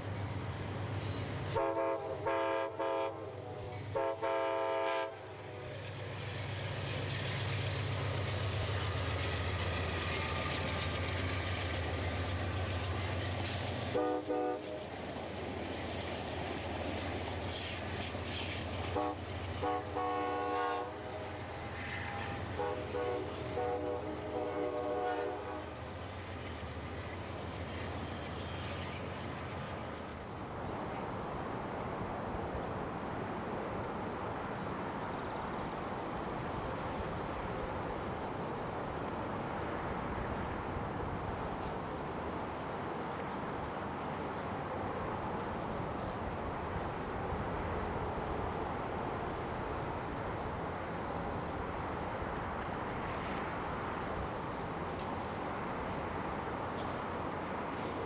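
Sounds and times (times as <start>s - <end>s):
train rumbling: 0.0s - 58.0s
locomotive horn blasts: 1.6s - 5.7s, 13.9s - 14.8s, 18.9s - 21.3s, 22.1s - 25.8s.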